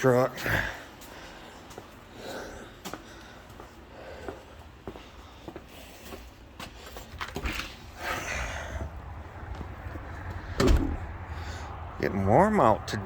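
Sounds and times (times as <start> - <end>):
footsteps: 1.0 - 8.2, 8.8 - 11.2.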